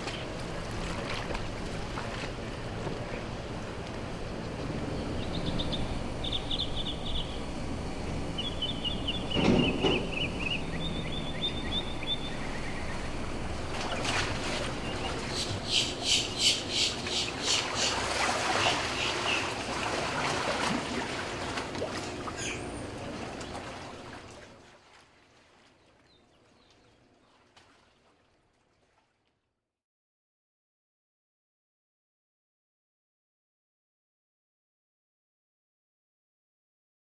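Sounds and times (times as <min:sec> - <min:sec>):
water wash: 0:00.0 - 0:06.1, 0:07.4 - 0:29.1
wind: 0:00.0 - 0:29.5
birds calling in trills: 0:04.2 - 0:07.5, 0:08.3 - 0:13.4, 0:14.8 - 0:19.6, 0:22.2 - 0:23.6.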